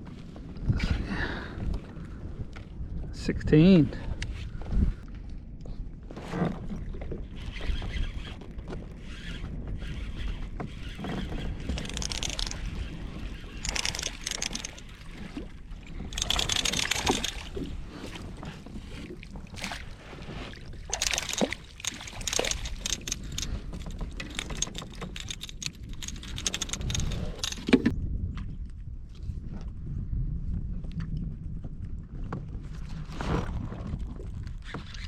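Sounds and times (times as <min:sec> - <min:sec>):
short knocks and clicks: 0:11.7 - 0:12.7, 0:13.6 - 0:14.9, 0:16.1 - 0:17.6, 0:20.9 - 0:27.9.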